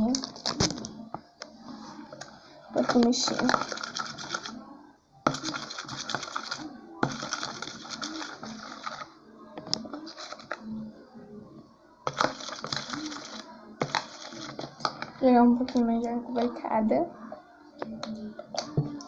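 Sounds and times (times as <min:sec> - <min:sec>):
spoon scraping container: 0:02.8 - 0:04.6, 0:05.3 - 0:09.1, 0:09.7 - 0:10.6, 0:12.1 - 0:15.8.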